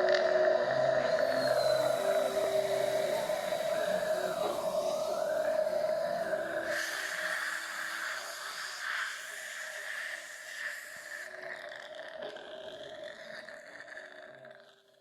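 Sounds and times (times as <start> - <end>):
dental equipment whine: 0.0 - 11.8
hiss of spray or suction: 1.2 - 10.1.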